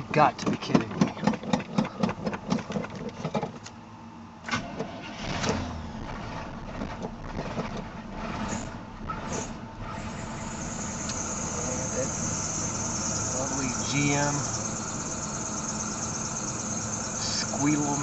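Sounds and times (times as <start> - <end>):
engine cranking on starter: 4.4 - 18.0
engine idling: 4.6 - 18.0
alternator belt squealing: 7.4 - 18.0.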